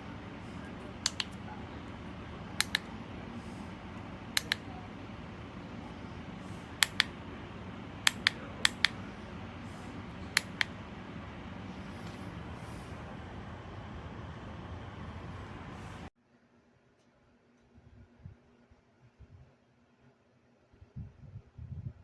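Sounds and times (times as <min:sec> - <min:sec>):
steady low hum: 0:00.0 - 0:16.1
sharp button clicks: 0:04.4 - 0:04.7.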